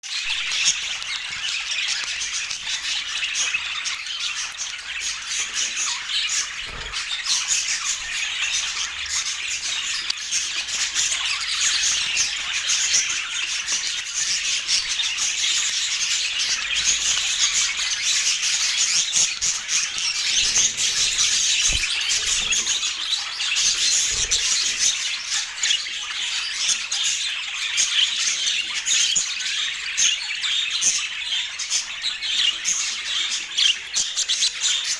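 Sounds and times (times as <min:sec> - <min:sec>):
budgerigars chattering: 0:00.2 - 0:34.9.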